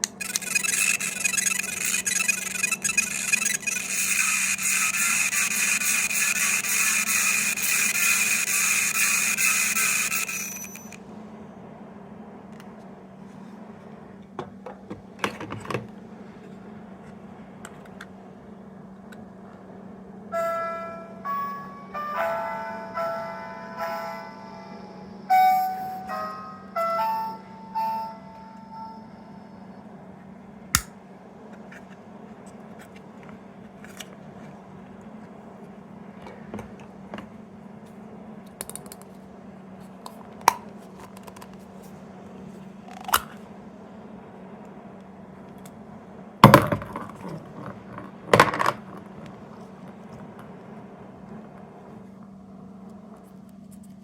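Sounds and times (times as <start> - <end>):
plastic toys clicking and knocking: 0.0 - 11.0, 46.4 - 49.4
steady low hum: 0.0 - 54.0.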